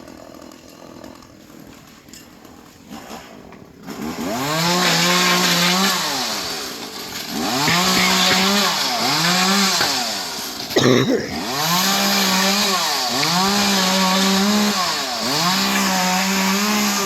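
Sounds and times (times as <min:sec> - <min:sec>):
chainsaw revving: 0:00.0 - 0:17.0.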